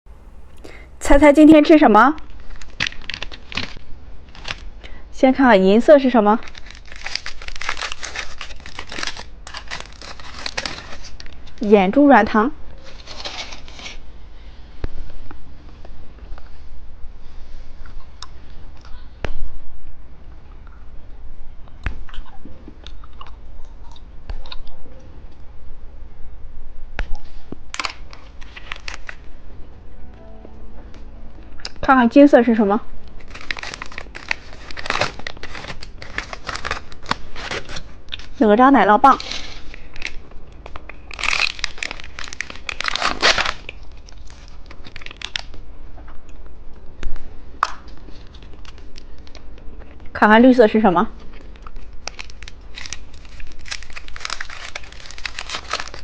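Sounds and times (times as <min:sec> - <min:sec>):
candy packaging crinkling: 0:02.2 - 0:04.9, 0:06.0 - 0:11.7, 0:12.8 - 0:14.0, 0:27.2 - 0:29.3, 0:33.0 - 0:38.4, 0:39.0 - 0:45.7, 0:46.7 - 0:49.6, 0:51.1 - 0:56.0.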